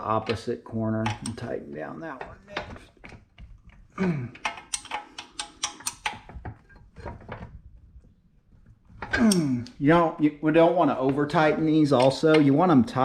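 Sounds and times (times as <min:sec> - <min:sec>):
ratchet clicking: 0:04.5 - 0:06.2.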